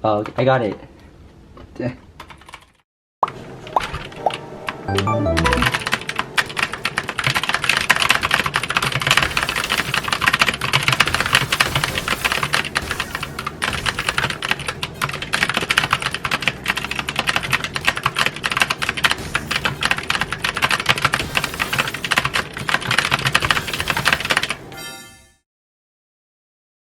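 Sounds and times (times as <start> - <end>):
fast typing on a keyboard: 2.2 - 2.8, 4.9 - 24.6.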